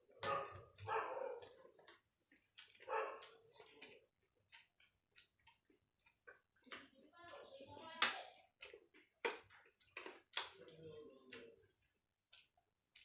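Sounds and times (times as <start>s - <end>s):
dog barking: 0.2s - 1.6s, 2.8s - 3.4s.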